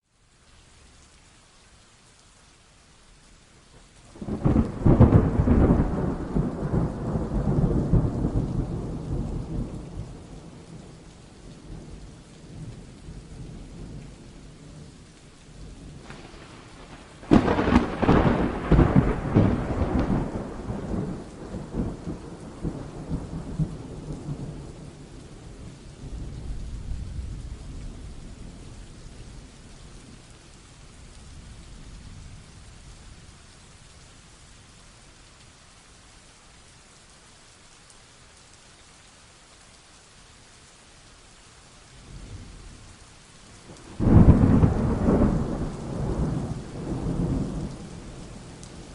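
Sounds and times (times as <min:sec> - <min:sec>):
steady rain: 0:00.0 - 0:48.9
thunder cracking and rumbling: 0:04.2 - 0:14.8, 0:15.8 - 0:29.6, 0:43.6 - 0:48.9.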